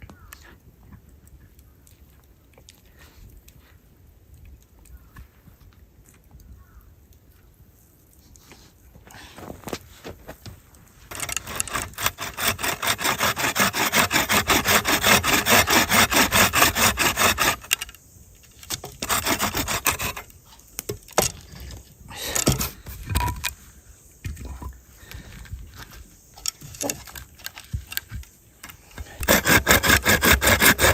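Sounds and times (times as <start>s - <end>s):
hand saw cutting wood: 11.1s - 18.0s, 18.6s - 20.4s, 28.6s - 30.9s.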